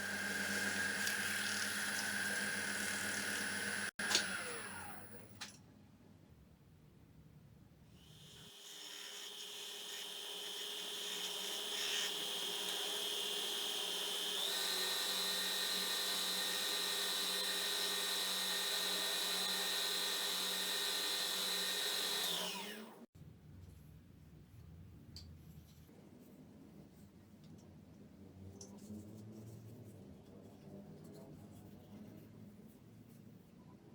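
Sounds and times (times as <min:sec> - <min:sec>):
power tool motor whining: 0:00.0 - 0:05.3, 0:08.3 - 0:23.1.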